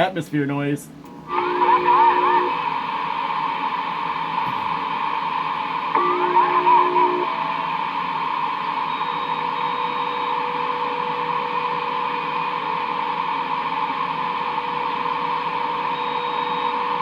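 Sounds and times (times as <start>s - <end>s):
faint steady radio whistle: 1.2s - 17.0s
radio static: 1.3s - 2.7s, 6.0s - 7.5s.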